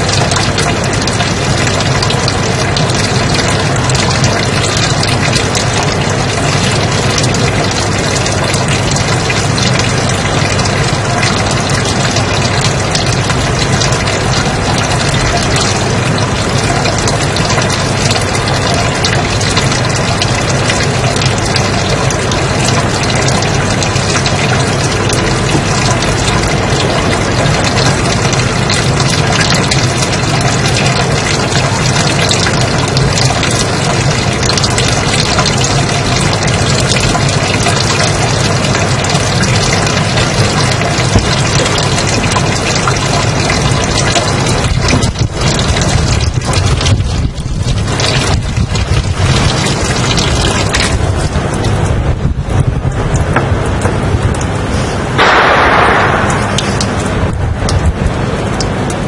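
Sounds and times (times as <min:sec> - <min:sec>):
white noise hiss: 0:54.7 - 0:59.0.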